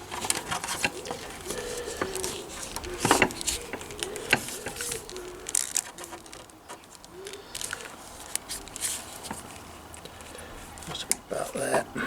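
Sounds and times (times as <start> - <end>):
pigeon cooing softly: 0.0 - 8.7
small clicks and rattles: 0.0 - 11.3.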